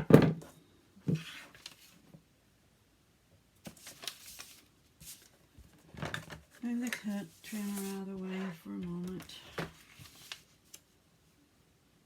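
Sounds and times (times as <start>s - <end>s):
paper rustling and sliding: 1.1s - 2.0s, 3.6s - 10.9s.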